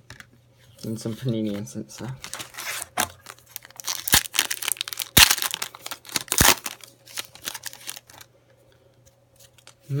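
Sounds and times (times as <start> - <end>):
plastic wrapper crinkling and tearing: 2.0 - 8.3.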